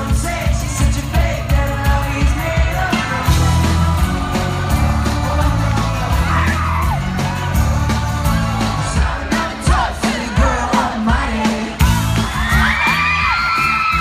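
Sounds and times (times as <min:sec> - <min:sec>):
person singing: 0:00.0 - 0:13.2
live pop band playing: 0:00.0 - 0:14.0
fans screaming: 0:02.9 - 0:14.0.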